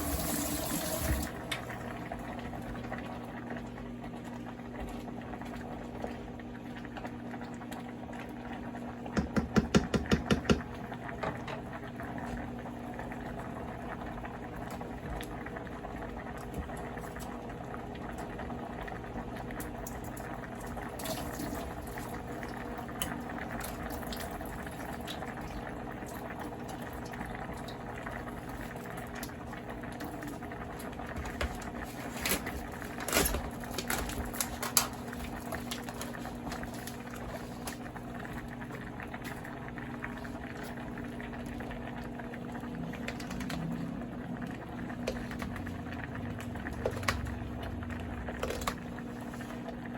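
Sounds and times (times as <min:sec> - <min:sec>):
liquid bubbling at the boil: 0:00.0 - 0:49.9
knocks: 0:09.2 - 0:10.6.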